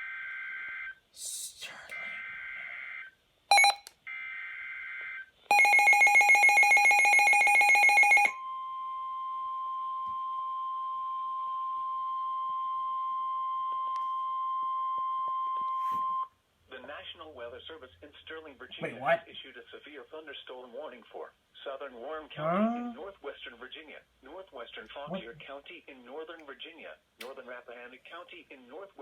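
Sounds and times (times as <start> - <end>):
rapidly pulsing alarm beep: 3.5 - 3.8, 5.5 - 8.4
steady warning alarm tone: 3.5 - 3.8, 5.5 - 8.4.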